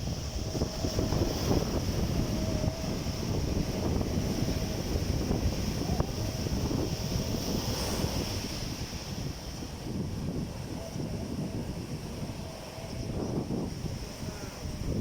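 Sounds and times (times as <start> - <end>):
sea waves washing ashore: 0.0 - 15.0
wind buffeting microphone: 0.0 - 15.0.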